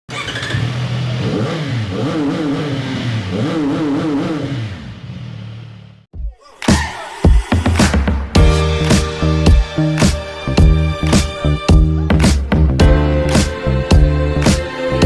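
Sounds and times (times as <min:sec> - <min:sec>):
motorcycle engine idling and revving: 0:00.1 - 0:06.1.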